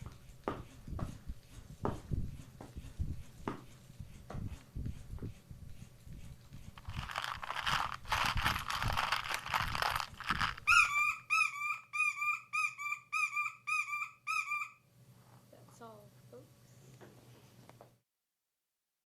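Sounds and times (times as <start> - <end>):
rustling and scuffling: 6.6 - 10.7
squeaky whistled chirps: 10.6 - 14.8.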